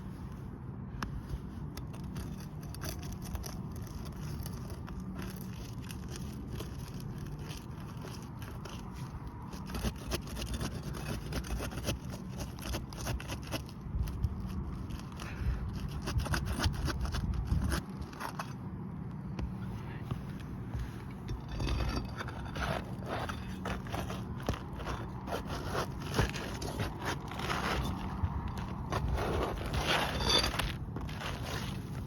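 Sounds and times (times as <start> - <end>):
hand tools scraping roof shingles: 1.9 - 18.5, 20.8 - 32.0
steady low hum: 17.2 - 32.0.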